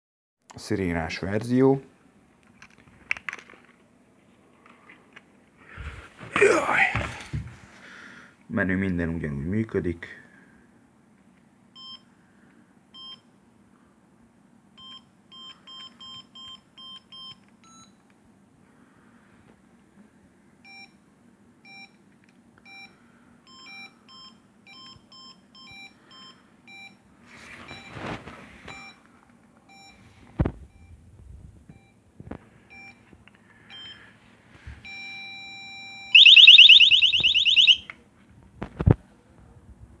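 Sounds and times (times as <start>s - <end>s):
electronic timer beeping: 35.2s - 37.8s
loud warbling siren: 36.2s - 37.9s.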